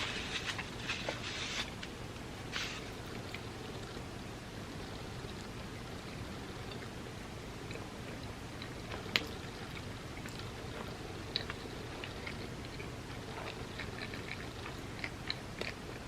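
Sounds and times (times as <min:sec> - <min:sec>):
chewing food: 0:07.7 - 0:16.0.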